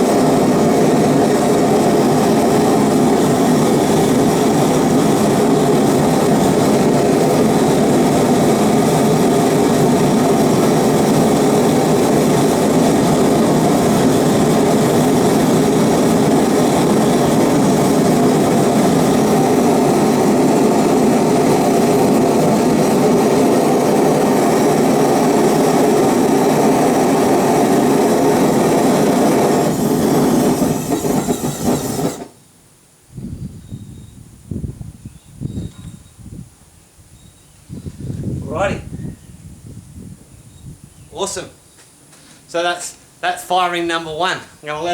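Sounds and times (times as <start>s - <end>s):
gas burner roaring: 0.0s - 32.4s.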